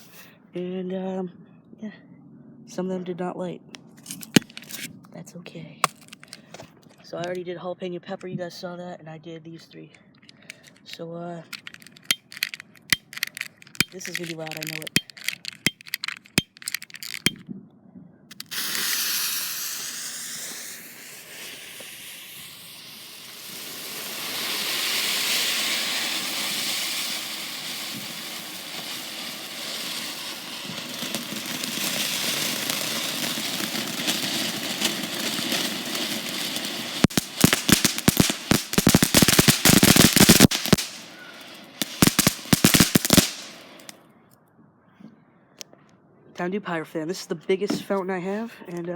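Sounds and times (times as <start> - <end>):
firework fountain spraying hiss: 0.0 - 0.2, 11.5 - 17.4, 18.3 - 44.0
rapid firework crackling: 4.0 - 4.8, 11.5 - 17.4, 18.3 - 44.0.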